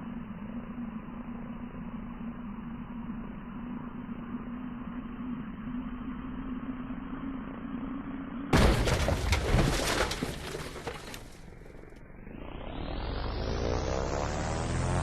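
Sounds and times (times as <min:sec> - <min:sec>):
rising whine: 0:00.0 - 0:08.5, 0:12.0 - 0:15.0
steady low hum: 0:00.0 - 0:09.1
explosion-like crash with crackling: 0:08.5 - 0:11.2.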